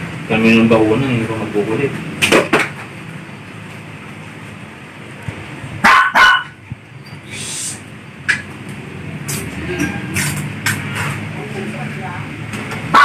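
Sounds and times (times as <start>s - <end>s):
dog barking: 5.8s - 6.6s
brief hiss: 7.3s - 7.8s.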